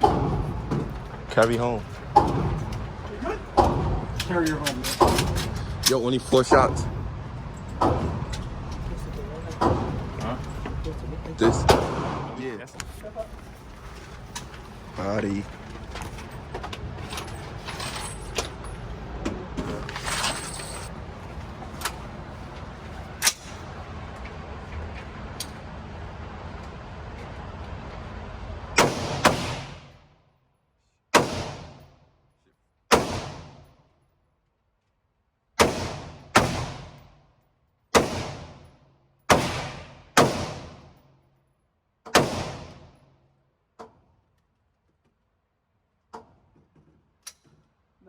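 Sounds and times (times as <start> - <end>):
gunshots echoing: 11.4 - 12.4, 28.8 - 29.9, 31.2 - 31.8, 32.9 - 33.6, 35.6 - 37.0, 38.0 - 38.6, 39.3 - 40.8, 42.2 - 42.8.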